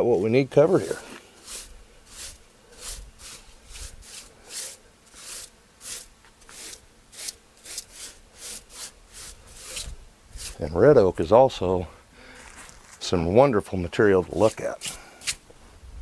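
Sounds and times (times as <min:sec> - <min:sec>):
rubbing strokes on wood: 0:00.0 - 0:10.9, 0:14.1 - 0:15.4.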